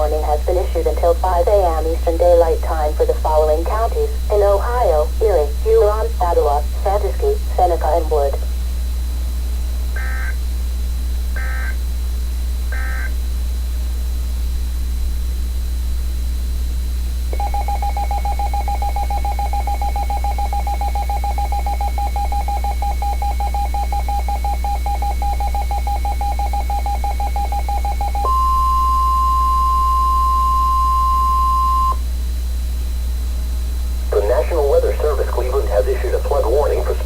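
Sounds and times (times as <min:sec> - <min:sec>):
steady warning alarm tone: 0:09.9 - 0:13.2, 0:17.3 - 0:33.2
rapidly pulsing beep tone: 0:10.0 - 0:10.4, 0:11.4 - 0:11.8, 0:17.4 - 0:32.0
low hum: 0:27.2 - 0:37.0.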